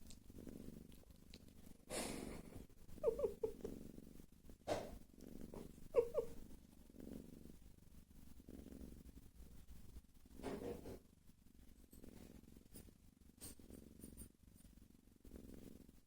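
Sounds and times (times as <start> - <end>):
cat snoring: 1.8 - 7.6.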